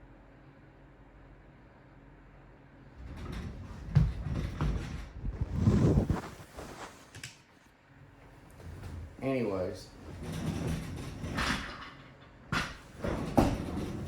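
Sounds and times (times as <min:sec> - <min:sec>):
faint steady hum: 0:00.0 - 0:14.0
rustling and knocking: 0:03.0 - 0:07.2.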